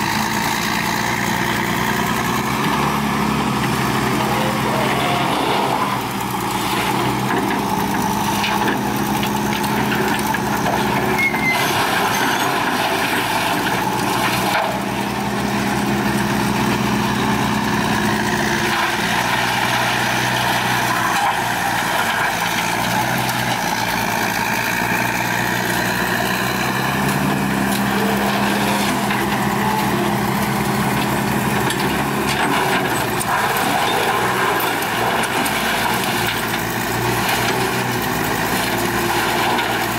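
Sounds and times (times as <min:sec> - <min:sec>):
excavator diesel engine: 0:00.0 - 0:39.9
wood grinder grinding: 0:00.0 - 0:39.9.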